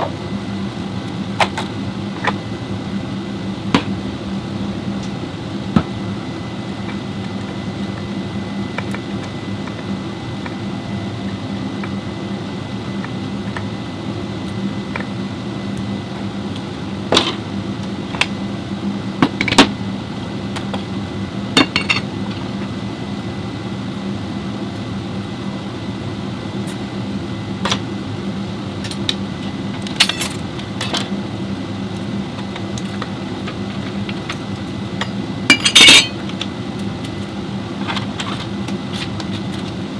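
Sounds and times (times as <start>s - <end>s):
low mechanical hum: 0.0s - 39.9s
metal tools clinking: 35.5s - 36.2s.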